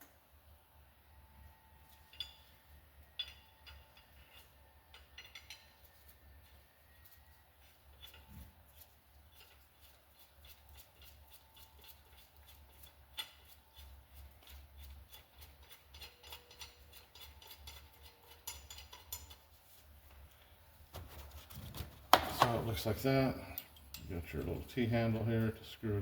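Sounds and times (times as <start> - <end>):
tools rattling: 1.9 - 6.1, 9.3 - 19.6
metal hand tools clicking: 9.3 - 19.4.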